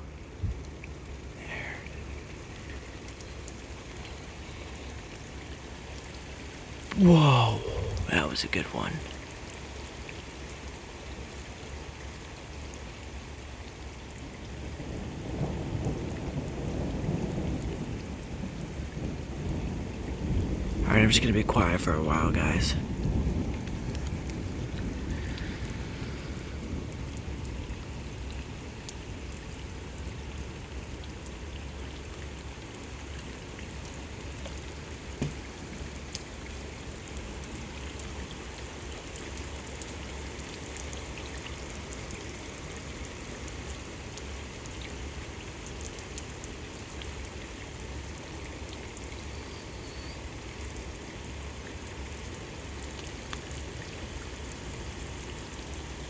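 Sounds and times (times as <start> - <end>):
steady rain falling: 0.0 - 56.0
thunder rumble: 7.1 - 8.7, 14.8 - 28.8.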